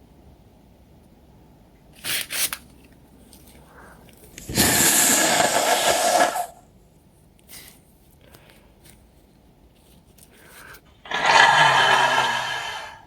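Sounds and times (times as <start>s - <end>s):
person blowing nose: 4.4s - 6.6s.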